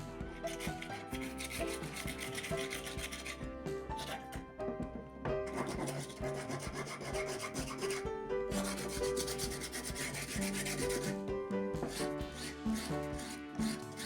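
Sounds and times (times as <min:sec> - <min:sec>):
background music: 0:00.0 - 0:14.0
sanding metal by hand: 0:00.5 - 0:03.4, 0:05.5 - 0:11.2, 0:11.8 - 0:14.0.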